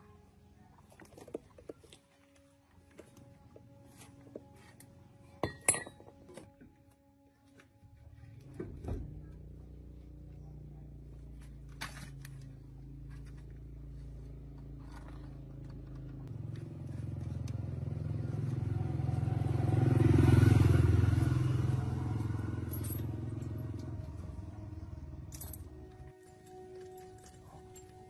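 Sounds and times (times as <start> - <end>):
motor engine running: 8.2 - 26.1.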